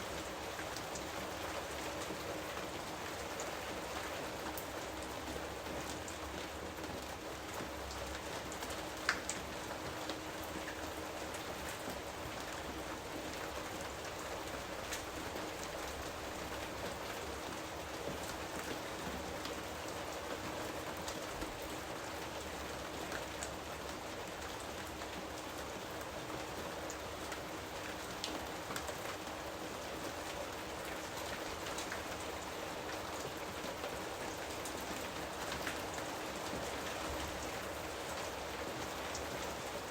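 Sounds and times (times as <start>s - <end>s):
steady rain hiss: 0.0s - 39.9s
raindrop ticks: 8.6s - 9.4s.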